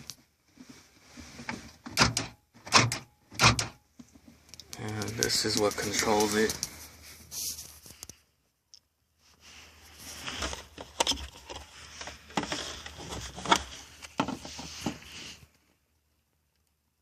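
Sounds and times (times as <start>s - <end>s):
handling rustling: 3.9s - 8.2s, 9.3s - 15.7s.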